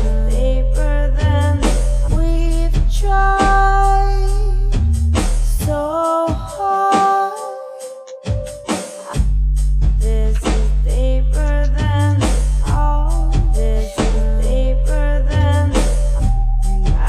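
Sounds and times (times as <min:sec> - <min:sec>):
deep sustained bass: 0:00.0 - 0:05.6, 0:09.2 - 0:17.0
drums: 0:00.0 - 0:17.0.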